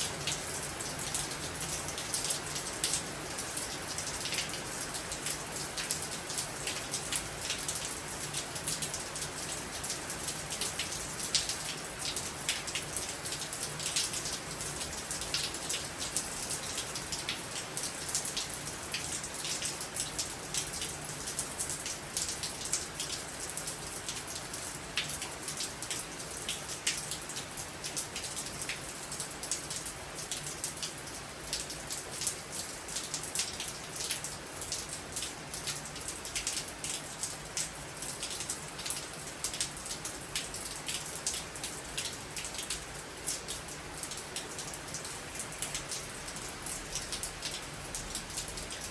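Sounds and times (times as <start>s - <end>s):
rain on hard surface: 0.0s - 48.9s.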